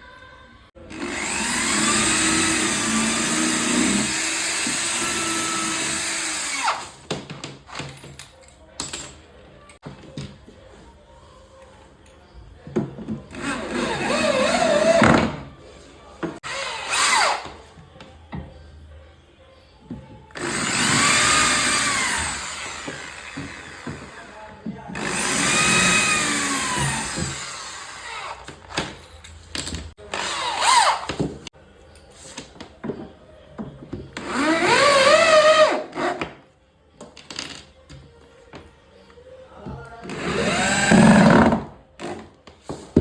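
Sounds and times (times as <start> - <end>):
cordless drill driving screws: 1.0 - 7.0, 20.4 - 24.2, 25.0 - 28.4, 34.2 - 36.1, 40.1 - 41.5.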